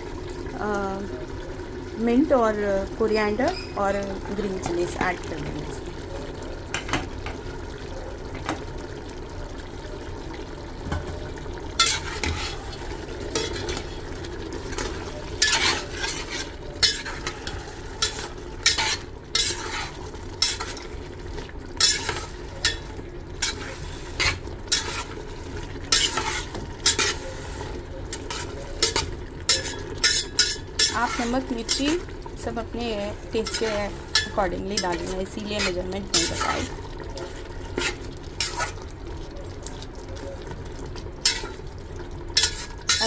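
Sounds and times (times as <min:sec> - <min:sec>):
food sizzling in a pot: 0:00.0 - 0:43.0
metal spoon scraping a pot: 0:11.8 - 0:14.0, 0:14.7 - 0:20.9, 0:21.8 - 0:25.2, 0:25.9 - 0:32.0, 0:33.3 - 0:38.8, 0:41.2 - 0:41.6, 0:42.4 - 0:43.0.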